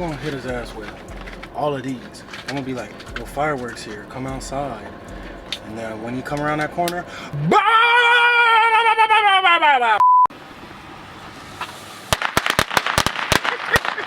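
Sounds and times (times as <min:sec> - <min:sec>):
firecrackers cracking: 0:00.0 - 0:05.7, 0:11.5 - 0:14.0
person shouting: 0:07.4 - 0:10.0
censor bleep: 0:10.0 - 0:10.3.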